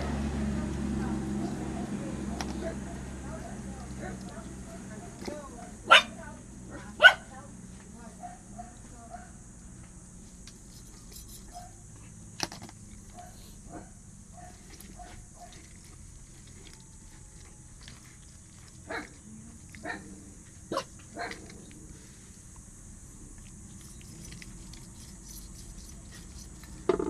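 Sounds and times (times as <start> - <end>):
dog barking: 4.0 - 5.2, 5.8 - 6.2, 7.0 - 7.3, 8.2 - 9.4, 11.5 - 11.8, 13.1 - 15.6, 18.8 - 19.2, 19.8 - 20.1, 20.7 - 21.5.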